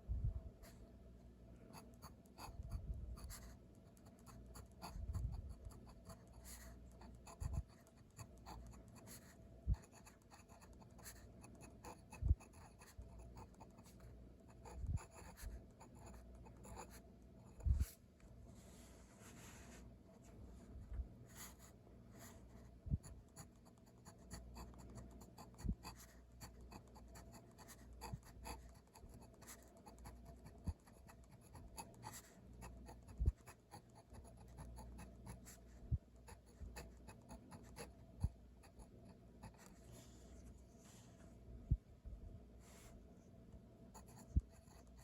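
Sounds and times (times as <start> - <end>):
pen scratching on paper: 1.7 - 18.0, 21.3 - 39.8, 43.9 - 45.0.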